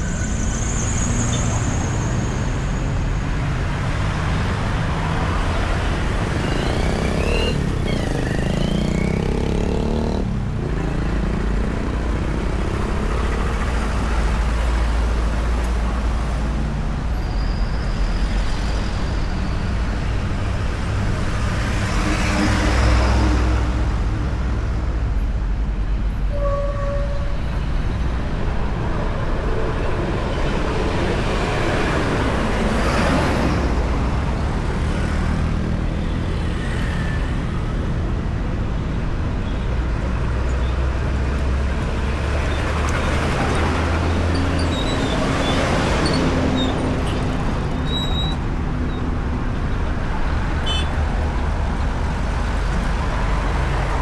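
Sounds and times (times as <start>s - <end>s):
heavy road traffic rumble: 0.0s - 54.0s.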